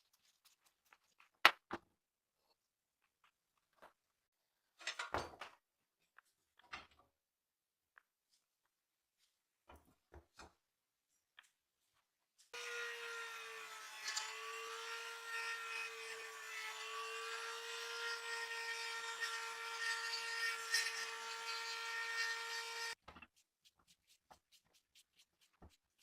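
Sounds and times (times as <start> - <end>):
power tool motor scraping surface: 12.6 - 15.3.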